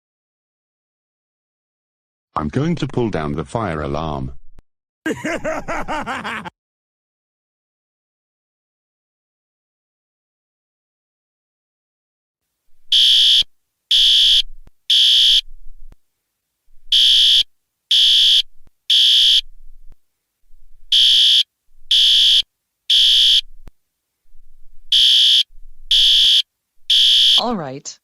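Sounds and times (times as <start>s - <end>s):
fire alarm beeping: 12.9s - 15.5s, 16.9s - 19.4s, 20.9s - 23.5s, 24.9s - 27.5s.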